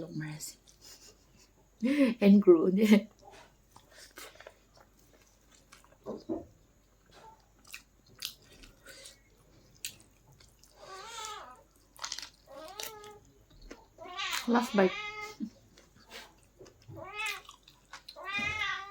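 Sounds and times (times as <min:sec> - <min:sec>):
chewing and crunching: 0:03.1 - 0:14.6, 0:15.5 - 0:18.9
cat meowing: 0:10.8 - 0:11.6, 0:12.5 - 0:13.3, 0:14.0 - 0:15.4, 0:16.9 - 0:18.9.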